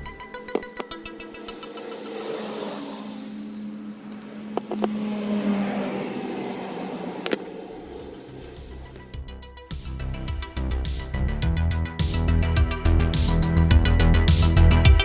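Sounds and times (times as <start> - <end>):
car engine revving: 0.3 - 10.3
rushing noise: 1.0 - 9.1.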